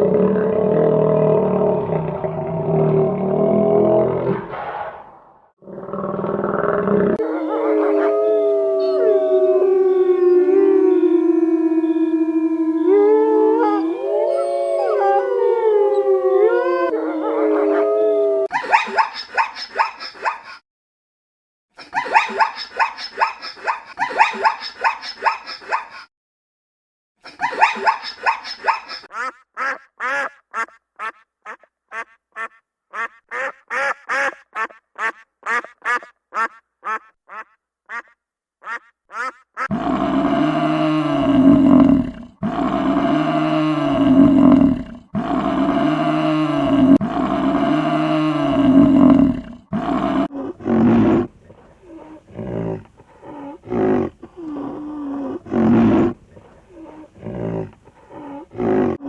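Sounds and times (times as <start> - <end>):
long low animal calls: 6.4 - 18.5, 39.6 - 59.0.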